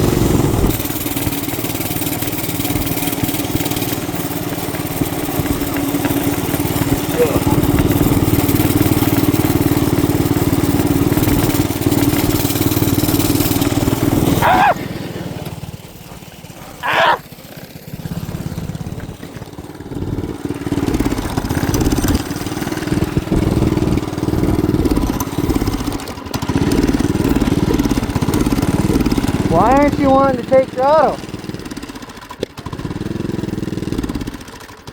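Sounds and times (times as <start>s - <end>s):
motorcycle engine running unevenly: 0.0s - 34.9s.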